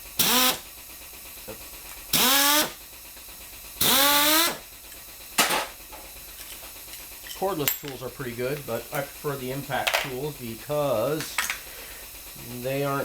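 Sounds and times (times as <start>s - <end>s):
air impact driver whine: 0.0s - 7.6s.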